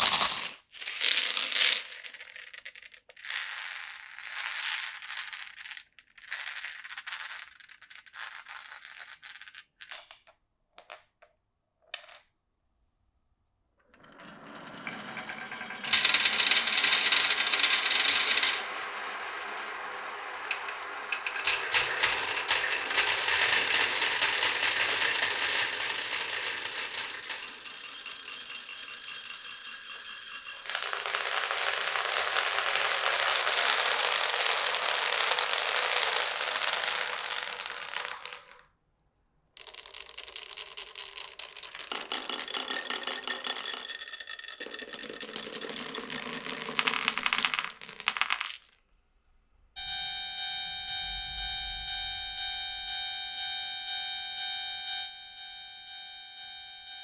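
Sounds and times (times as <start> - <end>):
marbles clicking and rattling: 0.0 - 11.1, 14.7 - 38.6, 39.6 - 48.8
marbles rolling on wooden track: 0.0 - 12.3, 13.9 - 38.7, 39.6 - 48.8.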